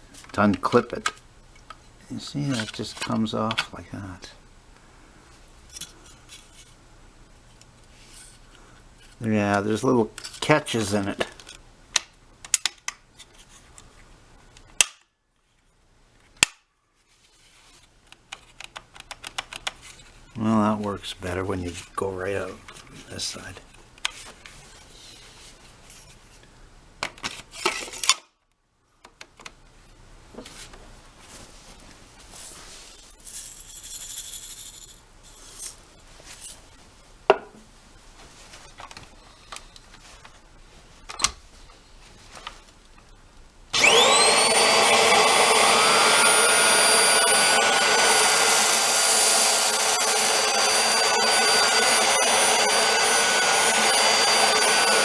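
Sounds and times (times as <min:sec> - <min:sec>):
vacuum cleaner motor whine: 0:43.8 - 0:55.0.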